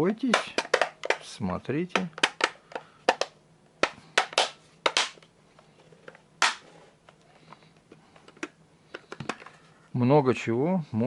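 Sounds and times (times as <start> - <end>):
small objects clicking and knocking: 0.2 - 5.3.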